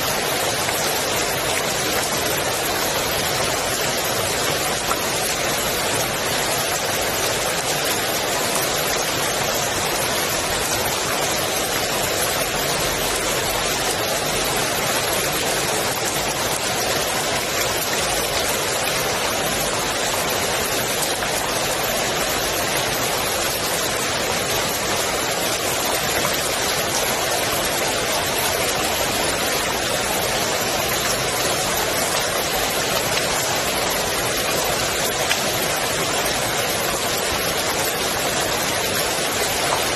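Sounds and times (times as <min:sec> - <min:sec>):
rain falling on pool water: 0:00.0 - 0:39.9.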